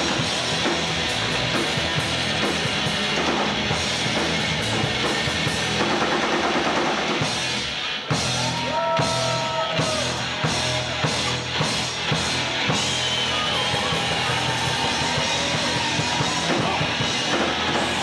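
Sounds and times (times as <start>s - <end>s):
instrumental rock band: 0.0s - 18.0s
drum beat: 8.2s - 18.0s.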